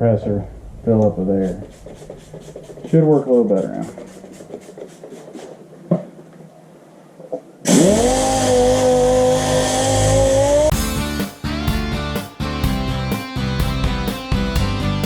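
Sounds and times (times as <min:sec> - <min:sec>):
air sander whining: 0:07.7 - 0:11.2.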